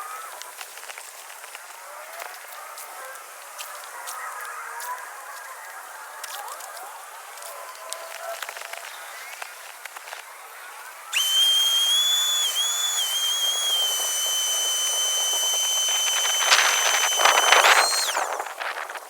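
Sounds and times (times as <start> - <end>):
shop vacuum motor whine: 11.1 - 19.0
rush of air and water through nozzle: 11.2 - 19.0.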